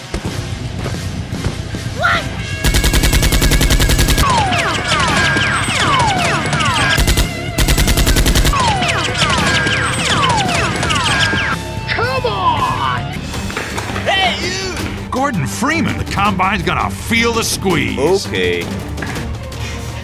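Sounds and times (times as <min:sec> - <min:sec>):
automatic gunfire bursts: 0:02.6 - 0:04.4, 0:05.7 - 0:08.6.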